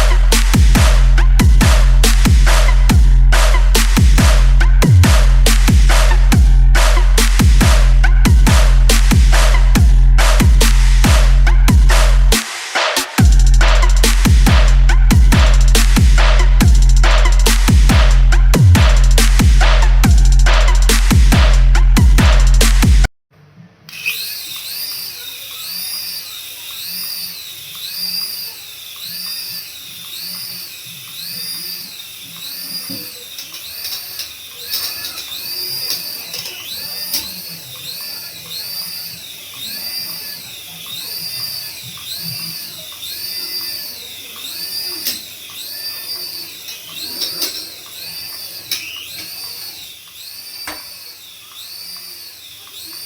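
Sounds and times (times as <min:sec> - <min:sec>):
toy helicopter motor whining: 0:00.0 - 0:22.9, 0:23.9 - 0:53.0
sharp clicks: 0:23.9 - 0:53.0.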